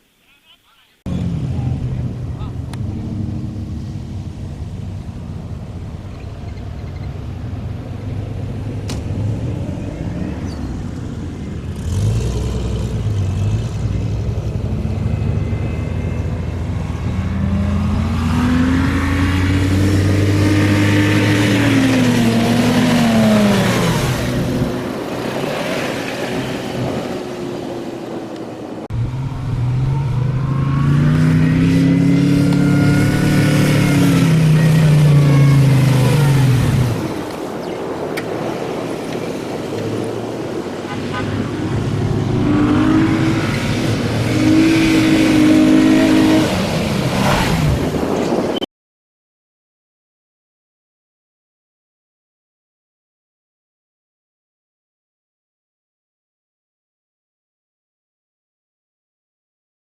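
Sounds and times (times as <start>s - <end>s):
vehicle engine revving: 6.6s - 37.7s, 38.4s - 48.5s.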